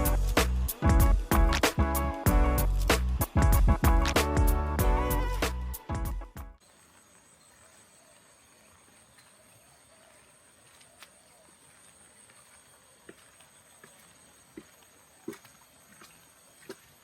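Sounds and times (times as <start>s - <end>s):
music: 0.0s - 6.6s
insects chirring: 6.6s - 17.0s.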